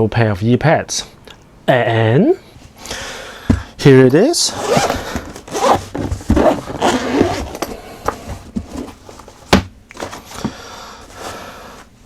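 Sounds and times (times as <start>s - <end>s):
packaging rustling and scraping: 4.5s - 12.0s.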